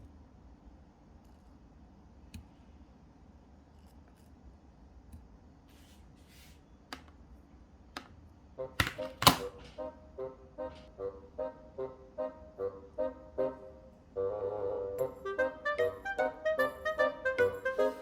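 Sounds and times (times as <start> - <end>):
music with a steady tune: 8.6 - 18.0.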